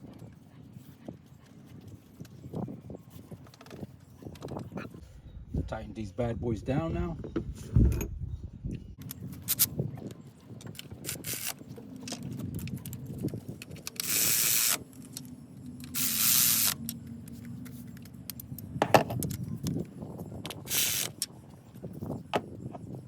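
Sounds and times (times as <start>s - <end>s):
metallic tool clicks and clinks: 10.6s - 21.3s.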